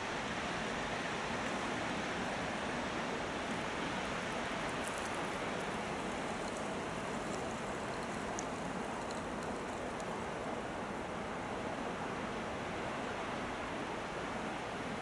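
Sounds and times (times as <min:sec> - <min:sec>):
faint ticks: 0:04.6 - 0:10.2.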